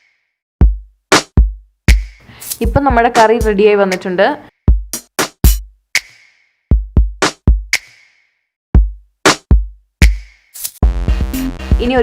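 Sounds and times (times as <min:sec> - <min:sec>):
drum machine beat: 0:00.0 - 0:08.2, 0:08.8 - 0:12.0.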